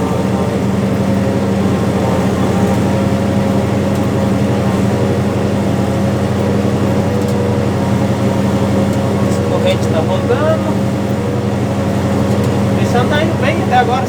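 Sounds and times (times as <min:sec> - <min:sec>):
tractor engine droning: 0:00.0 - 0:14.0.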